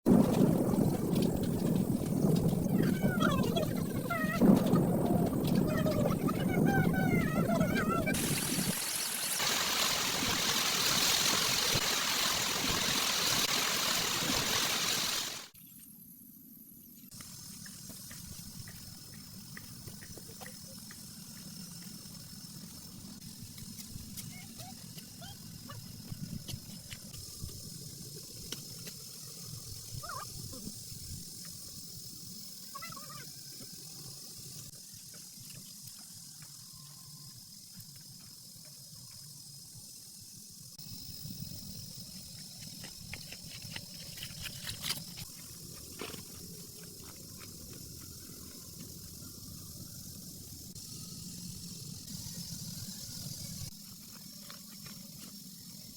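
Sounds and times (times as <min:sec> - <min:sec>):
steady rain falling: 0:00.1 - 0:15.5
drips and splashes: 0:08.2 - 0:15.5.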